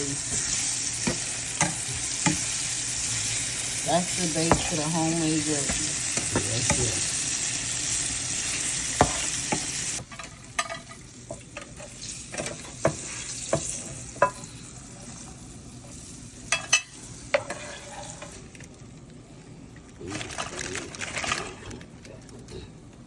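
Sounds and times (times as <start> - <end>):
oil sizzling in a frying pan: 0.0 - 18.6
utensil scraping a pan: 17.4 - 18.4.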